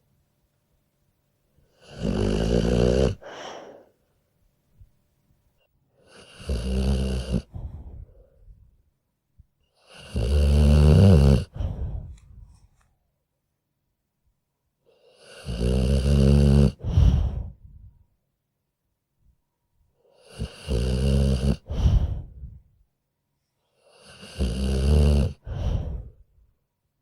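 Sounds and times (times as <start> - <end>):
quiet breaths: 0.0 - 13.2, 14.7 - 18.3, 19.3 - 26.7
dog snoring: 1.7 - 3.8, 6.0 - 8.2, 9.8 - 12.2, 14.9 - 17.5, 20.2 - 22.6, 23.8 - 26.2.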